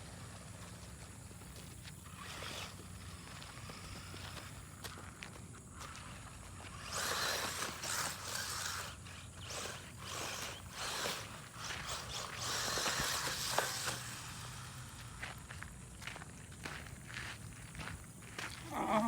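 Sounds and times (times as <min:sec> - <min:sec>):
rc truck whirring rattle: 0:00.0 - 0:18.4.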